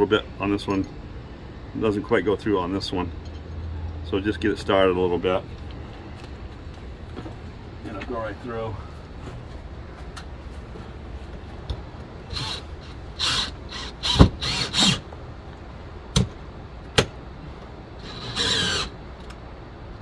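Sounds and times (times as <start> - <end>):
power drill driving screws: 12.3 - 15.0, 18.0 - 19.0.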